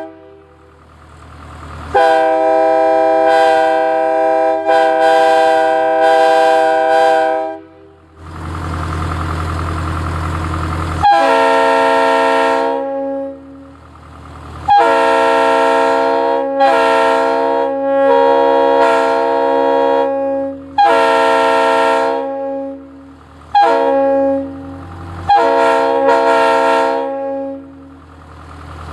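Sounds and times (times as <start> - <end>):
locomotive air horn blasts: 0.0 - 0.8, 1.9 - 8.2, 11.0 - 13.8, 14.7 - 28.0.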